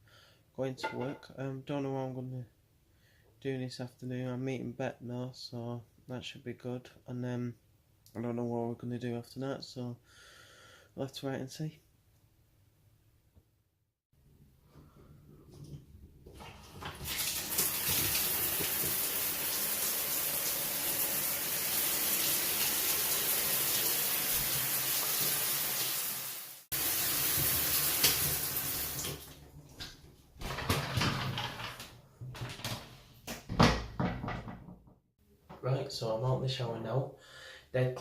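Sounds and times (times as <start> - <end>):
knocks and handling noises: 0.8 - 1.3, 29.8 - 35.6
water running from tap: 16.3 - 29.5.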